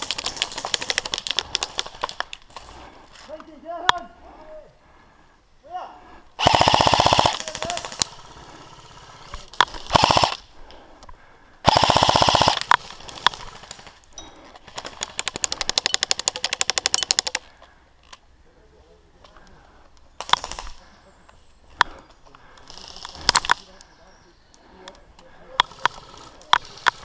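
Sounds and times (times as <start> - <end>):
airsoft guns firing bursts: 0.0 - 2.2, 6.4 - 10.5, 11.6 - 13.9, 14.7 - 17.4, 20.2 - 20.8, 22.6 - 23.7, 25.6 - 27.0.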